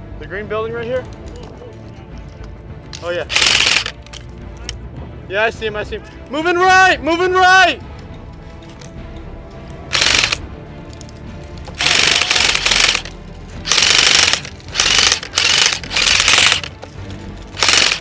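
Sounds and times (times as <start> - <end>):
airsoft rifles firing full-auto: 3.3 - 4.0, 9.9 - 10.4, 11.8 - 13.1, 13.7 - 16.8, 17.6 - 18.0.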